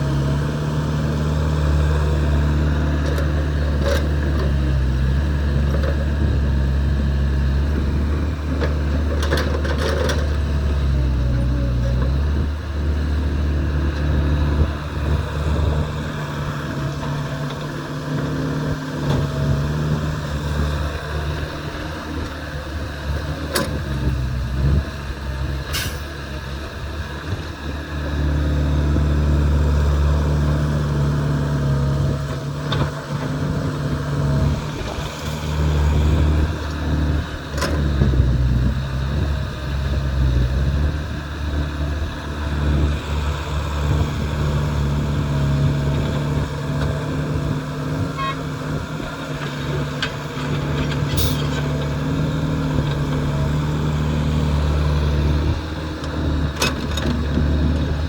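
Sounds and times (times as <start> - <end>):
diesel engine under load: 0.0 - 58.0.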